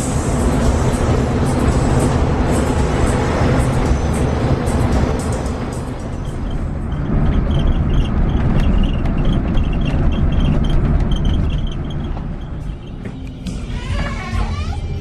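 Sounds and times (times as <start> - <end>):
bus engine and road rumble: 0.0 - 15.0.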